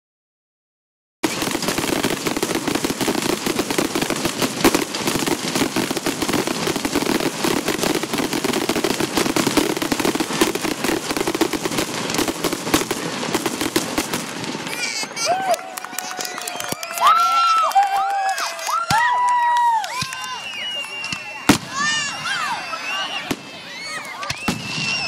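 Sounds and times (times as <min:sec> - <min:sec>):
firework bang: 0:01.2 - 0:14.8, 0:24.3 - 0:25.0
fireworks crackling: 0:01.2 - 0:25.0.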